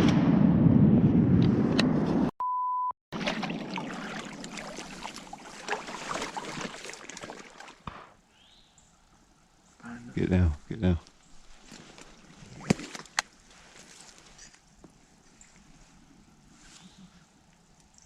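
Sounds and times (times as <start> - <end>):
flat bleep tone: 2.4 - 2.9
water sloshing: 3.2 - 8.0.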